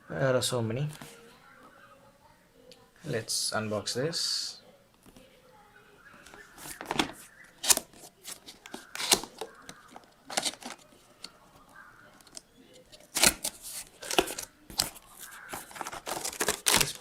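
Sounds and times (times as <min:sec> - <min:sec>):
packaging rustling: 0:06.6 - 0:11.2, 0:12.2 - 0:17.0
cardboard box ripping: 0:13.1 - 0:17.0.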